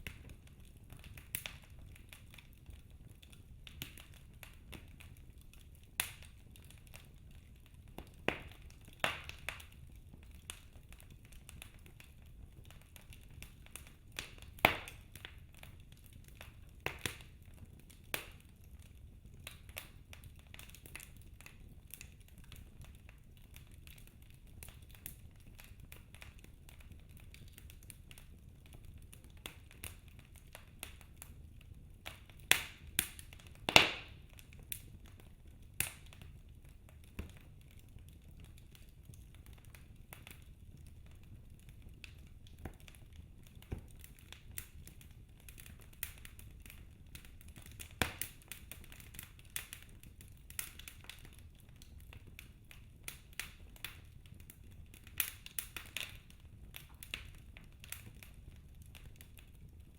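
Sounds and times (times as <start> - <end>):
wood fire crackling: 0.0 - 59.9
sharp fire pops: 8.0 - 11.9, 12.5 - 15.4, 32.0 - 37.6, 41.9 - 51.2.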